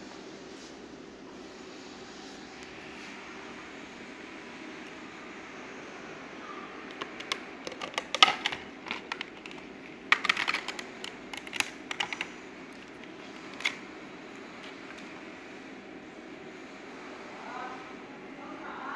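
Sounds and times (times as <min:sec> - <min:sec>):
steady hum: 0:00.0 - 0:18.9.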